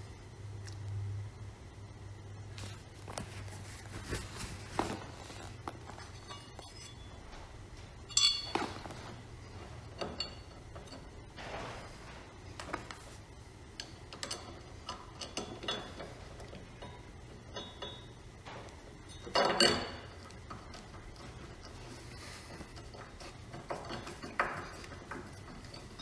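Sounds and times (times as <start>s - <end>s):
metal tools clinking: 2.6s - 11.6s, 19.0s - 26.0s.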